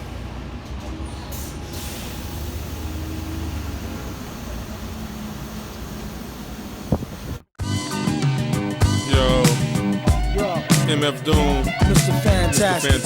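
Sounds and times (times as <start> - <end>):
bus engine rumble: 0.0 - 7.5
air brake hiss: 1.3 - 6.0.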